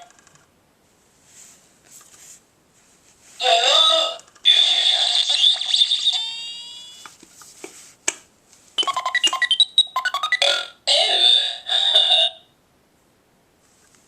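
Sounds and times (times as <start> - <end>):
toy electronic sound effects: 3.4 - 7.0, 8.8 - 12.4.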